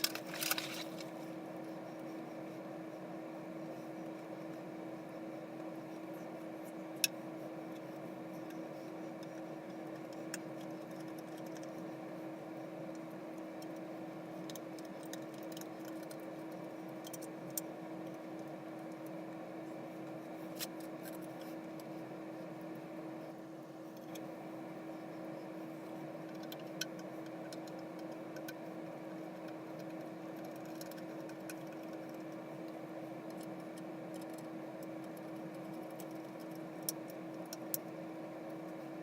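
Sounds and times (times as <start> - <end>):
metal tools clicking and rattling: 0.0 - 1.1
steady low hum: 0.0 - 39.0.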